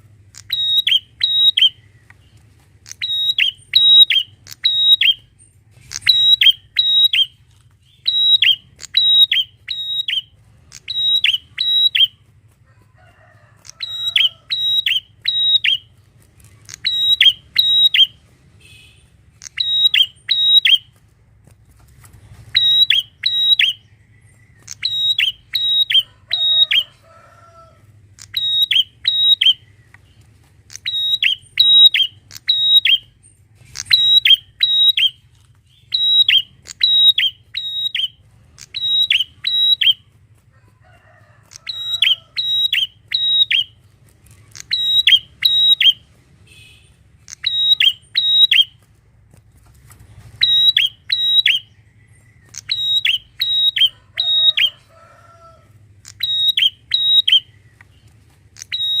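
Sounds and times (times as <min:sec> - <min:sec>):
bird calling sharp high notes: 0:00.3 - 0:01.9, 0:02.8 - 0:12.2, 0:13.7 - 0:15.9, 0:16.6 - 0:20.9, 0:22.5 - 0:23.8, 0:24.6 - 0:27.0, 0:28.2 - 0:29.8, 0:30.7 - 0:33.1, 0:33.7 - 0:40.0, 0:41.6 - 0:43.8, 0:44.5 - 0:48.8, 0:50.4 - 0:51.8, 0:52.4 - 0:54.8, 0:56.0 - 0:58.0, 0:58.6 - 0:59.0.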